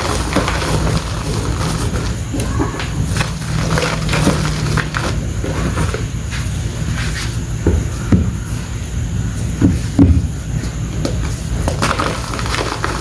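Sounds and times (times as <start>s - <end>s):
chalk crumbling and crunching: 0.0s - 7.4s, 10.6s - 13.0s.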